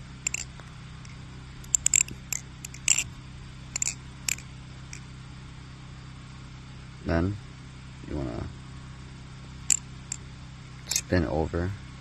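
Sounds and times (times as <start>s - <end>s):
butterfly knife metallic clicks: 0.2s - 3.1s, 3.8s - 4.4s.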